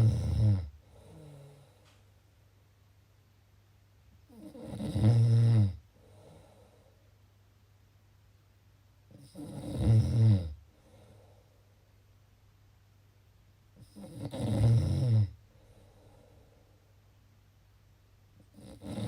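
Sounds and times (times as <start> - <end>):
loud snoring: 0.0 - 1.7, 4.3 - 5.8, 9.1 - 10.6, 13.8 - 15.4, 18.5 - 19.0
faint breath: 5.9 - 7.2, 10.6 - 11.9, 15.4 - 17.0.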